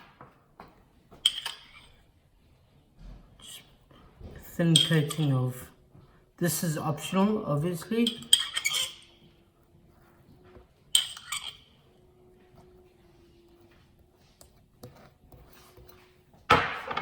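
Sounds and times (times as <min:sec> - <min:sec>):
faint steady hum: 0:00.2 - 0:16.5
cutlery clatter: 0:01.2 - 0:01.9, 0:11.0 - 0:11.7.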